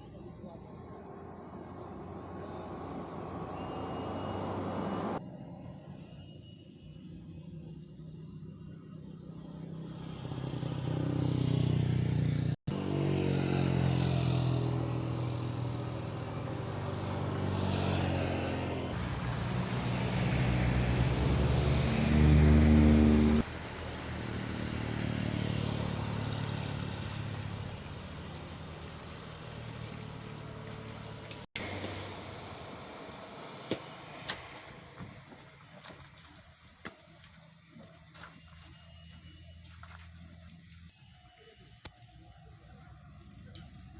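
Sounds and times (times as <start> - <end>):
vehicles passing on road: 0.5 - 5.3, 9.2 - 40.8
high-pitched insect buzz: 32.0 - 43.9.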